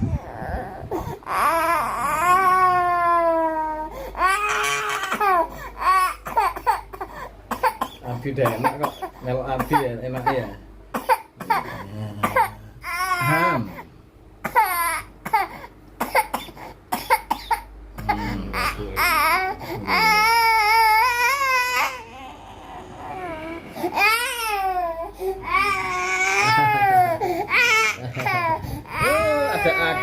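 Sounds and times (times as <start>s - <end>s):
baby crying and wailing: 0.0s - 7.1s, 12.3s - 13.8s, 14.5s - 15.7s, 18.1s - 30.0s
baby coughing: 6.0s - 13.4s, 14.4s - 18.8s.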